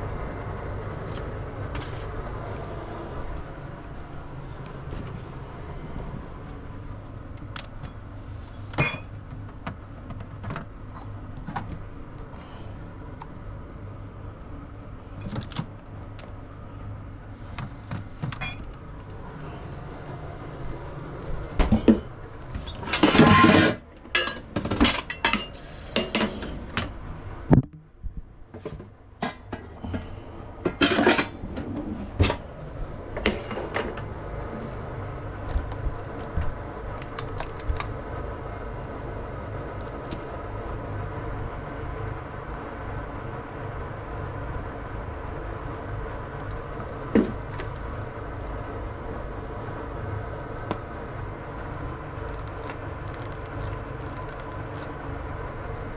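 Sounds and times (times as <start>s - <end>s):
steady low hum: 0.0s - 55.9s
dishes and cutlery clattering: 30.7s - 31.4s.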